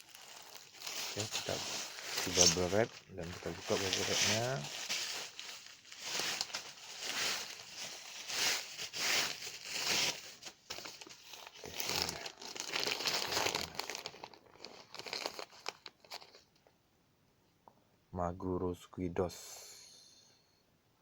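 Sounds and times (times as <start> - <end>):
bubble wrap crinkling: 0.0 - 16.6.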